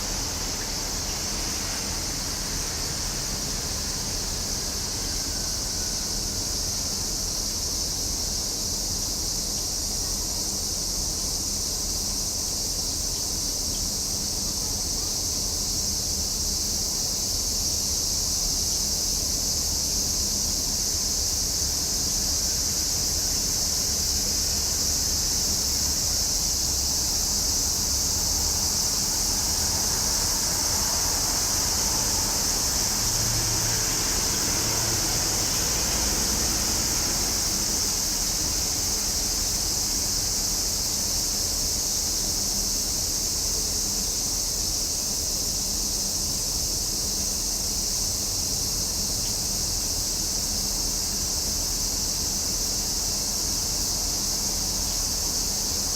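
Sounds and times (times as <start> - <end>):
cicadas singing: 0.0 - 55.9.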